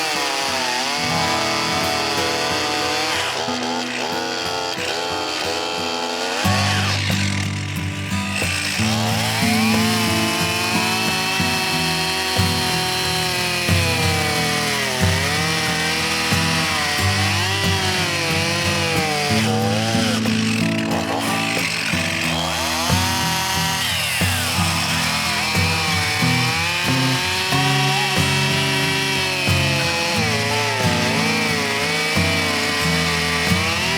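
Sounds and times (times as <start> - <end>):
chainsaw cutting log: 0.0 - 33.9.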